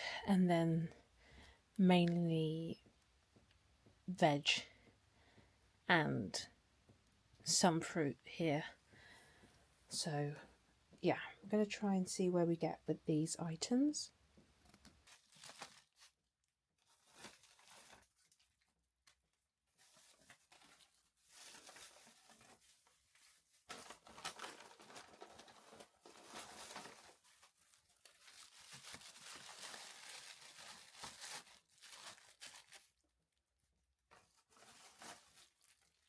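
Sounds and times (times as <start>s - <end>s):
plastic packaging crinkling: 14.8s - 16.2s, 16.8s - 19.2s, 19.8s - 33.0s, 34.2s - 36.0s.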